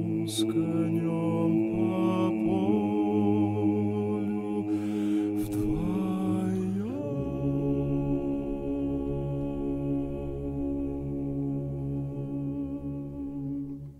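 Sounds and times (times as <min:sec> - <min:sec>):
voices singing held chords: 0:00.0 - 0:13.9.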